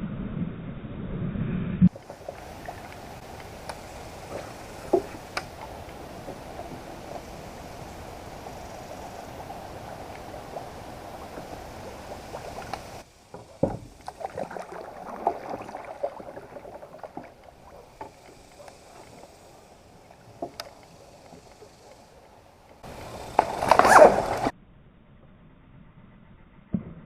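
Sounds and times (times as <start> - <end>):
knocks and clicks on hull: 1.9 - 8.5, 9.1 - 19.1
water washing: 1.9 - 24.5.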